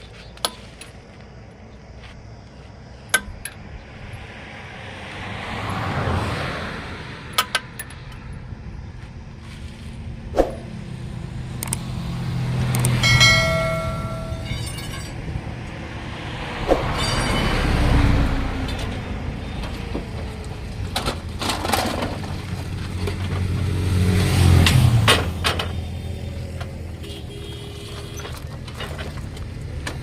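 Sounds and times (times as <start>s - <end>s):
engine humming: 0.0s - 30.0s
vehicles passing: 0.0s - 30.0s
metallic clinks and knocks: 12.7s - 15.4s.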